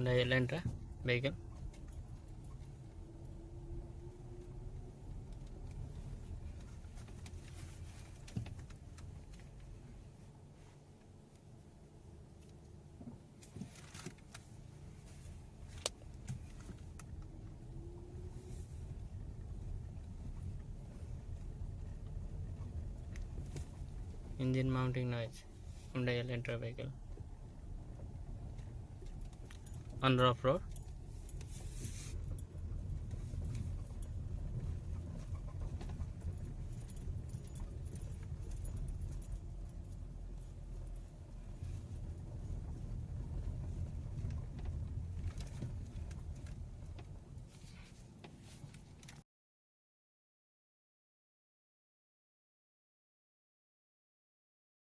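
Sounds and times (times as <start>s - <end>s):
road rumble: 0.0s - 49.2s
light rattles and knocks: 0.3s - 3.0s, 5.0s - 10.3s, 27.0s - 49.2s.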